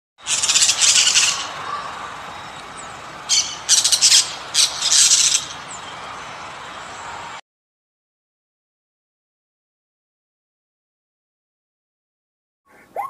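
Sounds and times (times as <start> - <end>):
animal's harsh raspy calls: 0.2 - 2.2, 3.3 - 5.5, 12.7 - 13.0.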